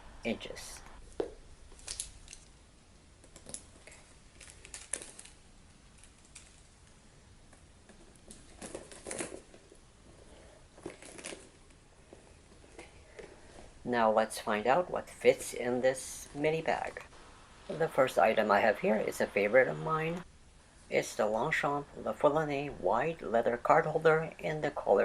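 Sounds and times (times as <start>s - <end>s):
soft rustles: 3.2s - 13.9s.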